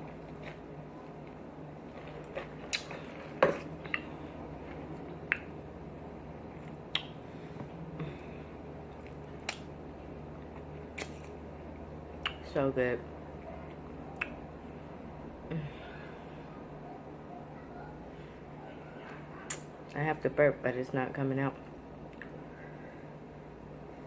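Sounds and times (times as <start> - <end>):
steady low hum: 0.0 - 24.0
wet lip smacks: 6.9 - 7.2, 14.2 - 14.4, 19.5 - 19.7.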